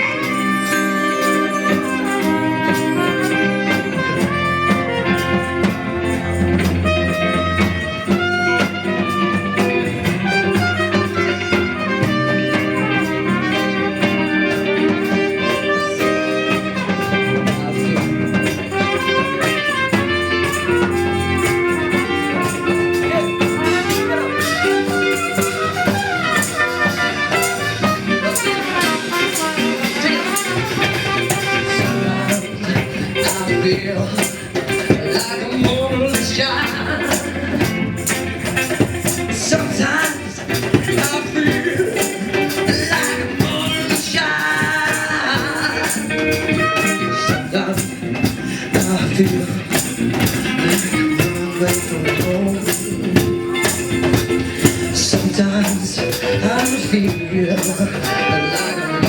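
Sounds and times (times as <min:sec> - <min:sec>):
bass: 0:00.0 - 0:59.0
drums keeping a beat: 0:00.0 - 0:59.0
melodic lead line: 0:00.0 - 0:59.0.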